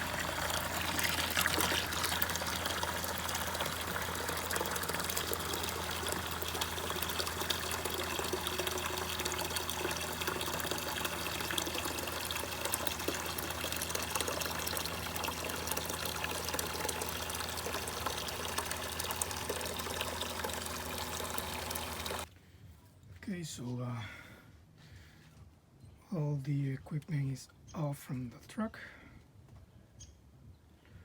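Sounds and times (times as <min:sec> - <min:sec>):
water pump humming: 0:00.0 - 0:22.3
water rushing from a hose: 0:00.0 - 0:22.3.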